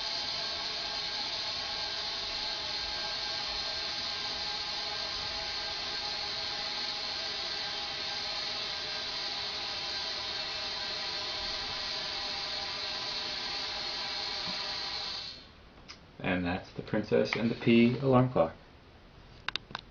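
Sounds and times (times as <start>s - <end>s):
compressed air hissing: 0.0s - 15.6s, 17.1s - 18.4s
faint steady tones: 16.5s - 19.0s.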